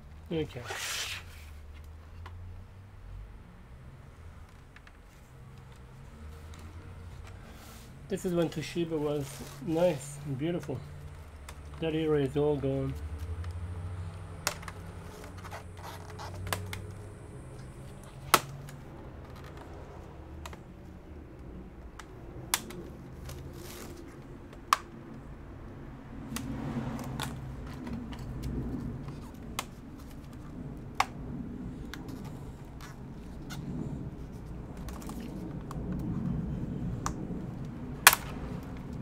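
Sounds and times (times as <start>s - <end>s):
low steady hum: 0.0s - 39.0s
soft scraping: 0.5s - 1.8s, 5.9s - 10.9s
clicks and taps of laptop parts: 13.0s - 15.5s, 37.0s - 39.0s.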